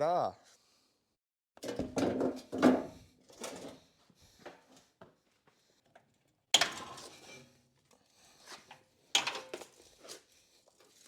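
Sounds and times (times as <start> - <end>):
tools and parts knocking and rattling: 1.6 - 3.7.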